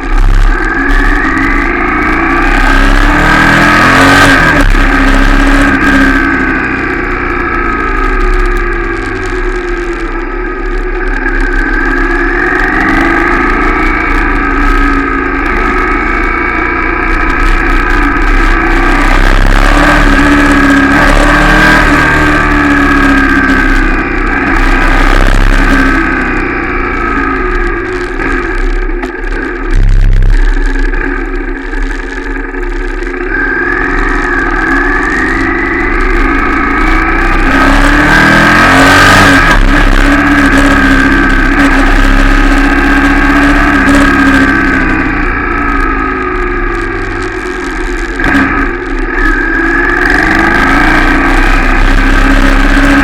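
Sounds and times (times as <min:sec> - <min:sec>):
motorcycle engine running: 0:00.0 - 0:53.0.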